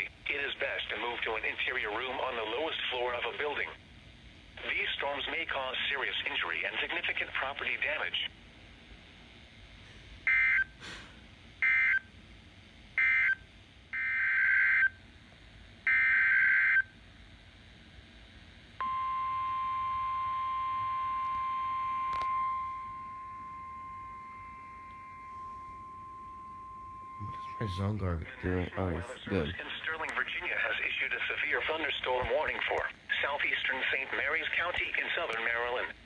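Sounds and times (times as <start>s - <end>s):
long continuous alarm beep: 10.2s - 10.8s, 11.6s - 12.2s, 12.9s - 15.0s, 15.8s - 17.0s, 18.8s - 29.0s.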